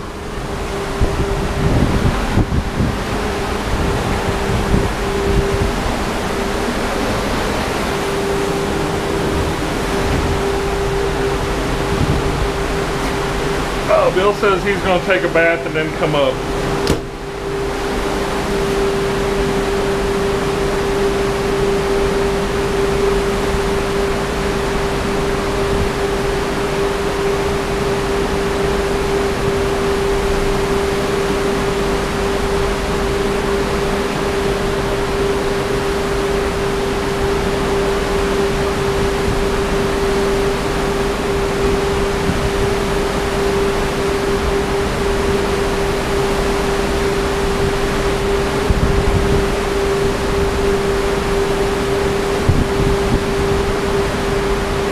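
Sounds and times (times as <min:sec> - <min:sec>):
wind on microphone: 0:00.0 - 0:13.8, 0:37.4 - 0:43.2, 0:47.5 - 0:54.9
strong wind roaring: 0:00.0 - 0:54.9.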